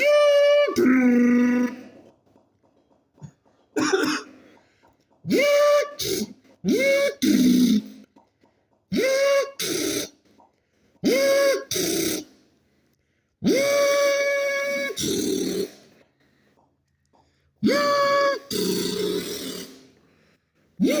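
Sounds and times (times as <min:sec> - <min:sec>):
person imitating impact wrench: 0:00.0 - 0:02.0, 0:05.3 - 0:08.3, 0:08.9 - 0:10.3, 0:11.0 - 0:12.4, 0:13.4 - 0:16.0, 0:17.6 - 0:20.0, 0:20.8 - 0:21.0.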